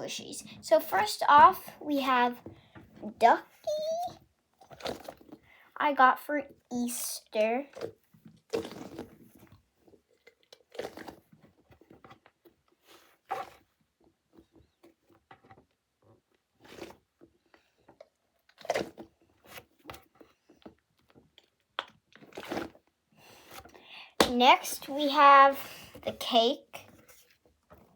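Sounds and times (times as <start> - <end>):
squishy toy squelching: 3.2 - 5.4, 6.9 - 9.6, 10.2 - 11.3, 18.5 - 19.9, 21.8 - 26.2.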